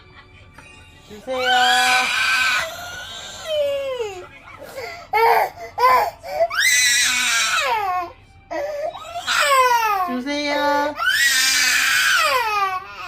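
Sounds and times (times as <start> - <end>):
toddler crying: 1.3 - 4.2, 4.8 - 10.2, 10.9 - 13.0.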